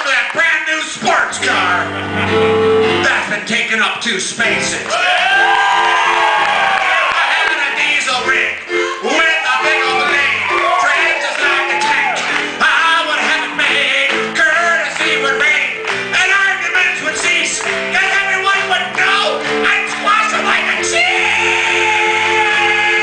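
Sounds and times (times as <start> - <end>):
guitar chords: 1.3 - 3.2
voices singing: 6.6 - 23.0.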